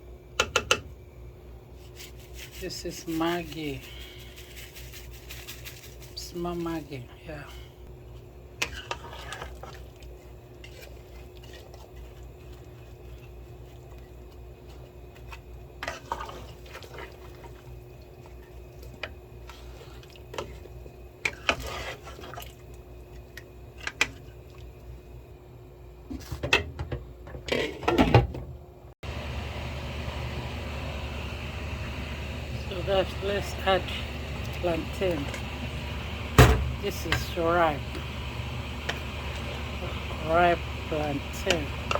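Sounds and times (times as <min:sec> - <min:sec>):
low hum: 0:29.0 - 0:41.9
steady rumble: 0:29.0 - 0:41.9.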